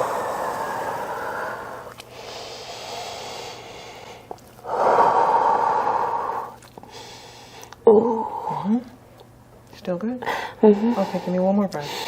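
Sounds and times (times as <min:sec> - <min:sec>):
woman breathing deeply: 0:00.0 - 0:08.7.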